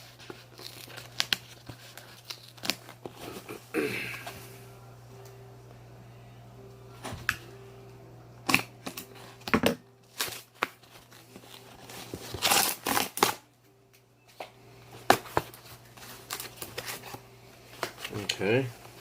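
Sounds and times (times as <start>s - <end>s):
packing material rustling and crinkling: 0.0s - 3.6s, 9.0s - 13.4s, 14.9s - 19.0s.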